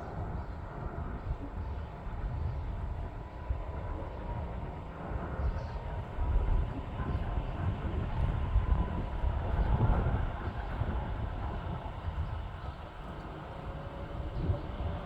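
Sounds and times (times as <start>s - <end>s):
wind buffeting microphone: 0.0s - 15.0s
jet engines running: 2.8s - 15.0s.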